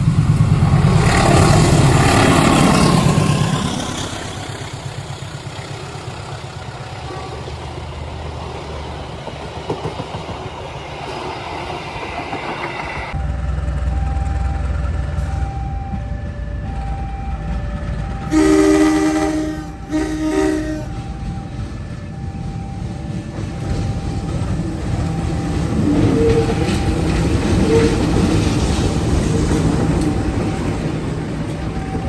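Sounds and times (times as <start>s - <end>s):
train rumbling: 0.0s - 32.0s
locomotive horn blasts: 6.9s - 7.7s, 18.2s - 21.5s, 25.8s - 28.4s.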